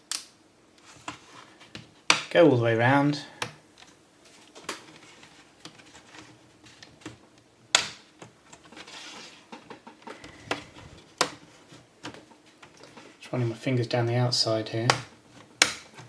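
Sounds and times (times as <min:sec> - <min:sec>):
plastic rubbing and ticks: 0:03.4 - 0:13.3
plastic clips clicking loose: 0:14.9 - 0:16.0.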